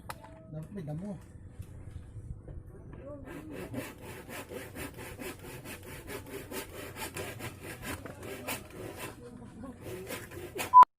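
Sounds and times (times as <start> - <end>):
fast rhythmic scraping: 3.3 - 10.8.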